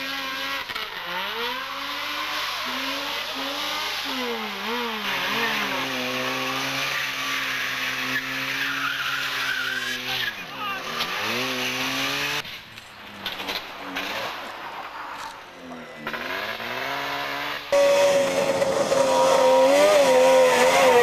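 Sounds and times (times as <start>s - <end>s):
rally car engine revving: 0.0s - 21.0s
tyre and road noise hiss: 9.3s - 19.7s.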